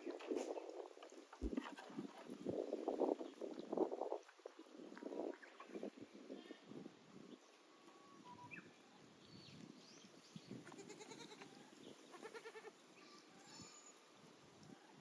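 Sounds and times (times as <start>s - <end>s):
goat bleating: 10.6s - 11.5s, 12.1s - 13.8s.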